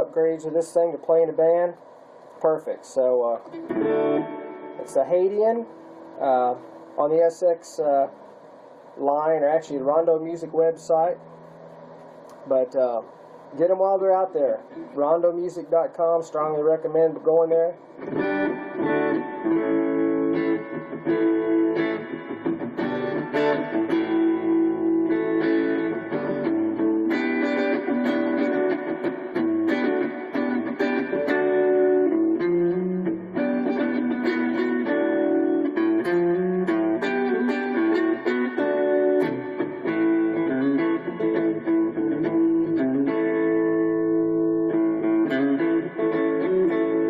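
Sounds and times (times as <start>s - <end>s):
clean electric guitar chords: 3.2s - 7.4s, 18.0s - 47.0s.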